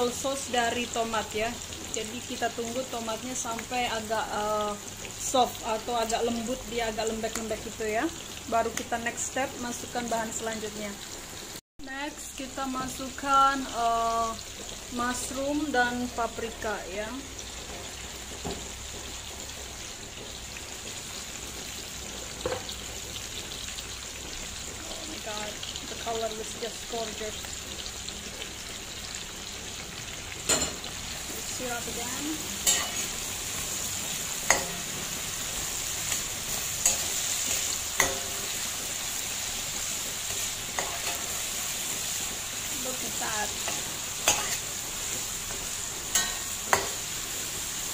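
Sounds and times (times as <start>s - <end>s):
vegetables sizzling in a pan: 0.0s - 47.9s.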